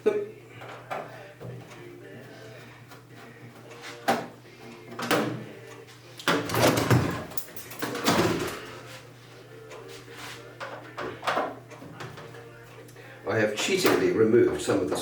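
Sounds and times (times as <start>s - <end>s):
parts scraping and rattling: 6.3s - 8.9s.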